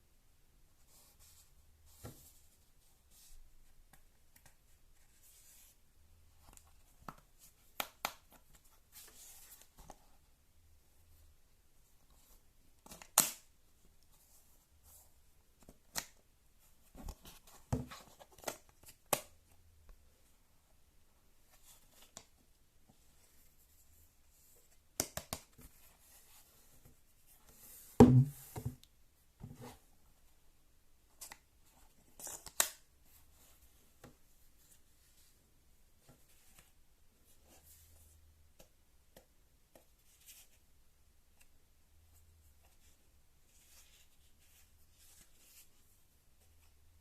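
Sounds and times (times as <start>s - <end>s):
knock with low thud: 28.0s - 28.4s.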